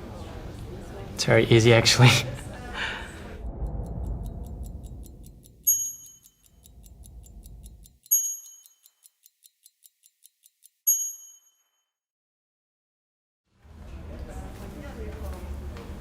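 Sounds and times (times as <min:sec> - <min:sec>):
low rumble: 0:02.4 - 0:08.0
clock ticking: 0:03.4 - 0:11.2.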